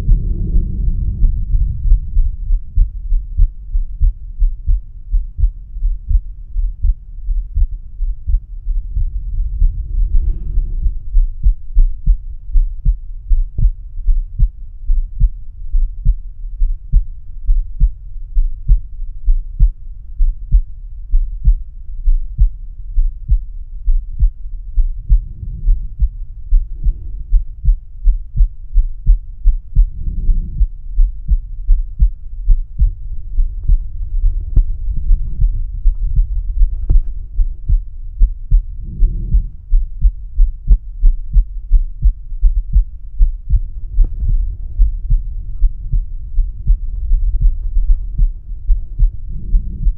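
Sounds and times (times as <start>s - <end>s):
low noise swells: 0.0s - 15.8s, 23.1s - 49.9s
heartbeat through stethoscope: 0.0s - 49.9s.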